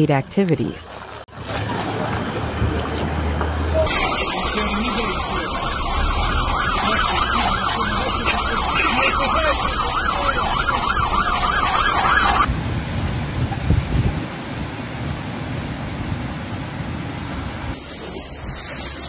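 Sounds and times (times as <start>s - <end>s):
emergency siren warbling: 3.7s - 12.6s
steady rushing noise: 12.4s - 19.0s.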